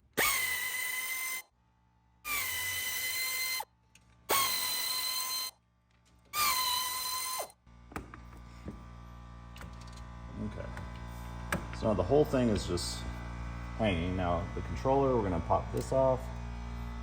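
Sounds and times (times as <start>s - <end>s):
air ratchet whining: 0.0s - 1.5s, 2.3s - 5.6s, 6.3s - 7.6s.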